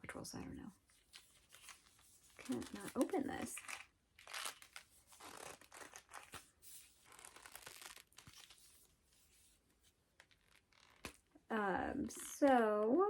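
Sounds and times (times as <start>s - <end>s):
plastic packaging tearing: 1.0s - 8.8s, 10.2s - 11.3s.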